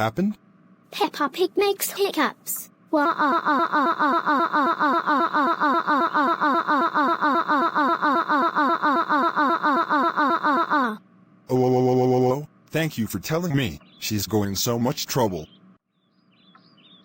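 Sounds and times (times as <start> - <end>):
cartoon voice laughing syllables: 3.0 - 11.0.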